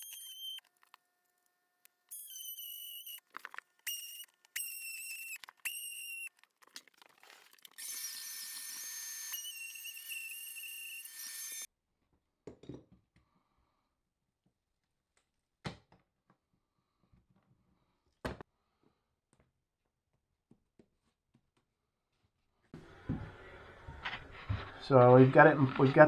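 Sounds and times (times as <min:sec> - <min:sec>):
high-pitched power tool whine: 0:07.8 - 0:11.7.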